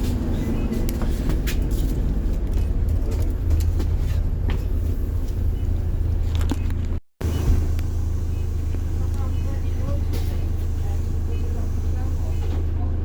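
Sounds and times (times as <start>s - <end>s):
bus diesel engine rumble: 0.0s - 13.0s.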